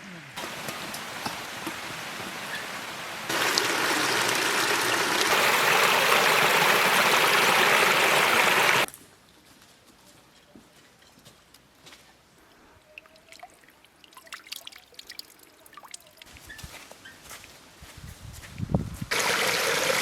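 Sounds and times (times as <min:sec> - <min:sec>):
river water rushing: 0:00.4 - 0:08.9, 0:19.1 - 0:20.0.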